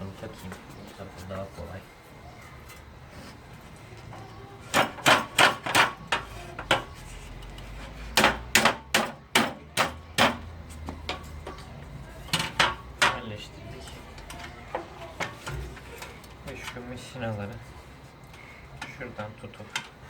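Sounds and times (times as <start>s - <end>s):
hammer tapping a frame: 4.7s - 6.9s, 8.1s - 11.2s.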